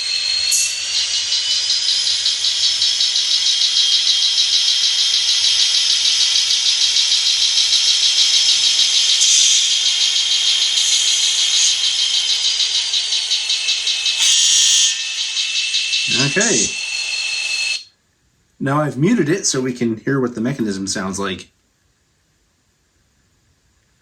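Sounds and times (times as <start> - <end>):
tinny diesel locomotive engine beat: 0.0 - 17.8
high squeal: 0.0 - 17.9.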